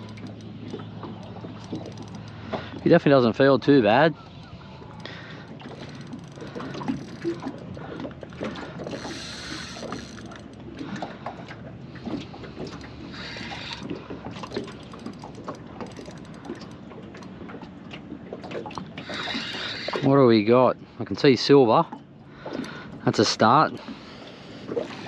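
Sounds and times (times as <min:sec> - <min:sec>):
fishing reel clicking: 0:00.0 - 0:00.5, 0:01.6 - 0:02.9, 0:05.7 - 0:07.8, 0:08.8 - 0:10.6, 0:13.2 - 0:13.8, 0:14.5 - 0:16.8.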